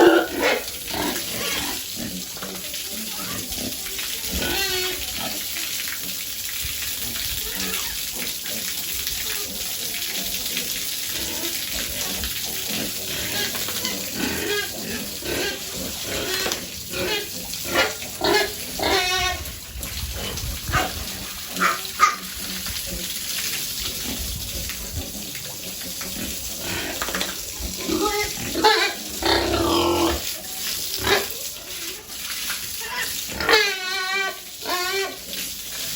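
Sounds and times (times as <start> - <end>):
running water hiss: 0.0 - 35.9
piglets squealing: 14.3 - 19.5, 27.9 - 30.2, 32.8 - 35.2.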